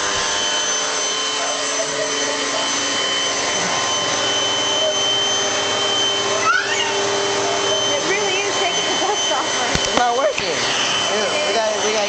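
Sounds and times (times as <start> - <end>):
vacuum cleaner running: 0.0 - 12.0.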